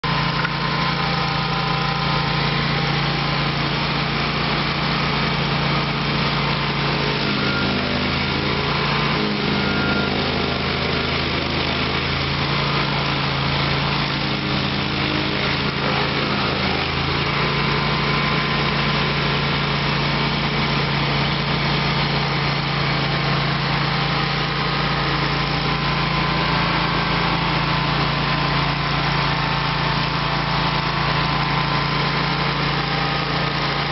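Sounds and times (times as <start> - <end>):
stump grinder engine running: 0.0 - 33.9.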